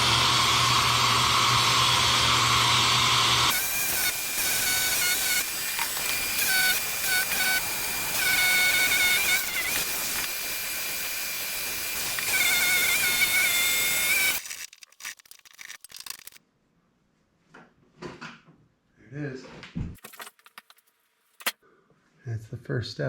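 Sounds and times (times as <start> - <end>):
power tool cutting wood: 0.0 - 14.7.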